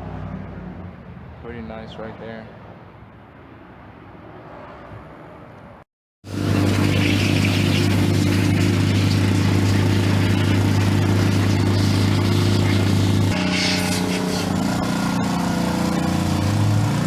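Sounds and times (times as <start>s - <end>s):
car engine running loud: 6.3s - 17.0s.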